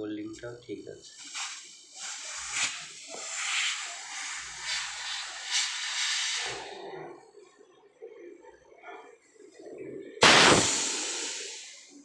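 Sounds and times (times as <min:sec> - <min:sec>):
pressurised gas hissing from pipework: 0:00.6 - 0:07.2, 0:10.2 - 0:12.0.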